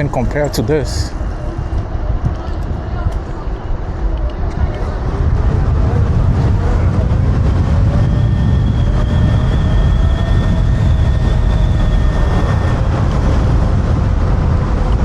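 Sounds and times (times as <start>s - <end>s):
wind and road noise rumble: 0.0s - 15.0s
electric scooter motor whine: 0.3s - 15.0s.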